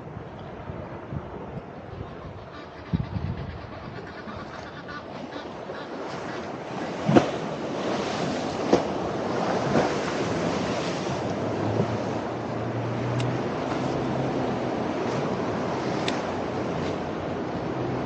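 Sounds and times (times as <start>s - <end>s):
water splashing along kayak hull: 4.5s - 18.0s.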